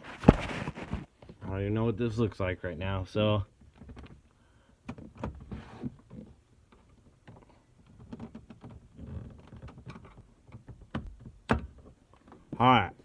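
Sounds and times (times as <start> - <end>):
soft rustling: 0.0 - 1.4.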